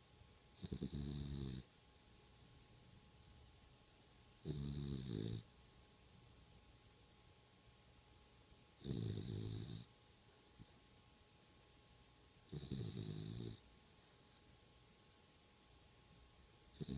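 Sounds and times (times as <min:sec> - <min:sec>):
faint steady hum: 0:00.0 - 0:16.9
rasping snores: 0:00.6 - 0:01.6, 0:04.4 - 0:05.4, 0:08.8 - 0:09.9, 0:12.5 - 0:13.6.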